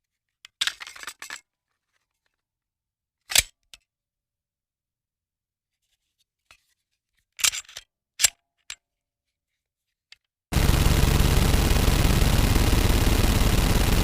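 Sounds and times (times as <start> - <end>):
rough pulsing noise: 10.5 - 14.0.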